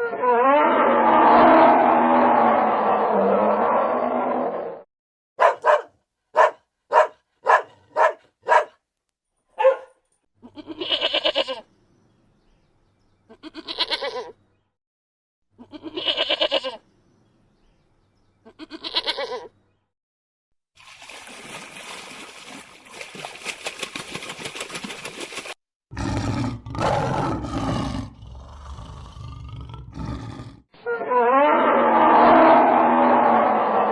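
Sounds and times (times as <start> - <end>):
big cat roaring: 0.2 - 4.8, 25.9 - 30.7, 31.3 - 33.9
dog barking: 5.4 - 8.8, 9.6 - 10.0
goat bleating: 10.4 - 11.6, 13.3 - 14.4, 15.6 - 16.8, 18.4 - 19.5.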